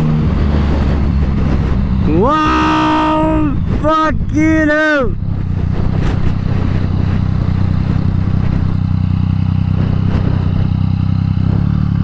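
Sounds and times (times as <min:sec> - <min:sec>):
motorcycle engine running: 0:00.0 - 0:12.0.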